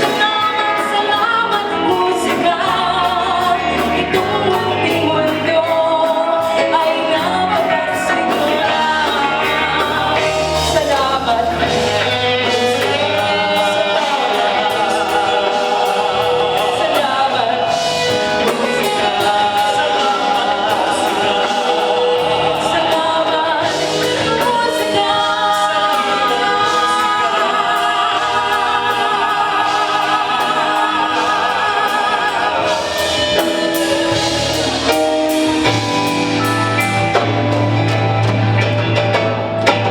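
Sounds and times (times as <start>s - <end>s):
instrumental backing: 0.0s - 39.9s
vocal group singing in harmony: 0.0s - 39.9s.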